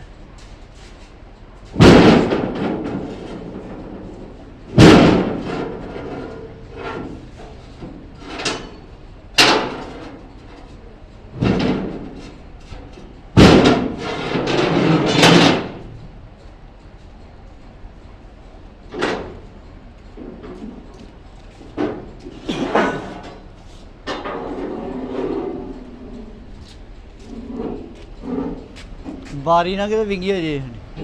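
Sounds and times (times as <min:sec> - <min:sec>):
rattling clatter: 0:00.4 - 0:29.3
loud slams with ringing: 0:01.8 - 0:03.5, 0:04.8 - 0:05.9, 0:13.4 - 0:15.9.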